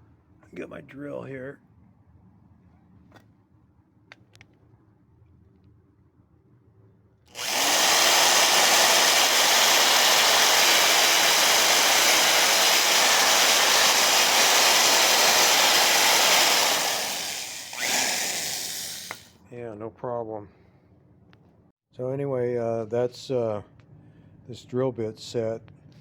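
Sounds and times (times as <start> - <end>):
power drill whirring: 7.3 - 19.3.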